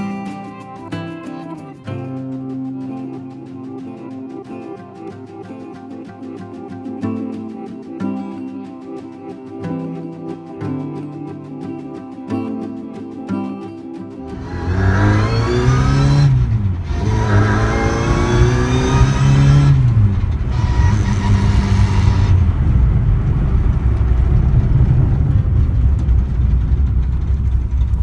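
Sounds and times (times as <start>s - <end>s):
car engine revving and idling: 14.2s - 28.0s.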